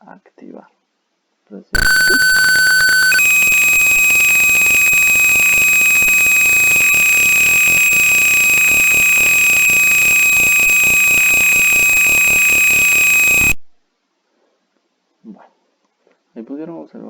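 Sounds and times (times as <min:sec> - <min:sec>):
high-pitched alarm buzzer: 0:01.8 - 0:13.6.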